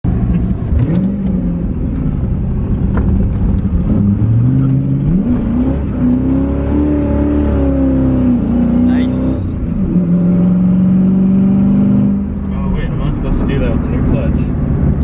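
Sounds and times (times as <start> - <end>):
car engine revving: 0.1 - 15.0.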